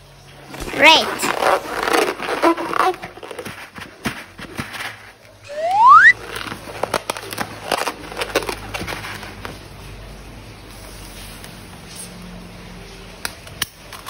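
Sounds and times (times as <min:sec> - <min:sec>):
rising squeal: 0:05.5 - 0:06.2.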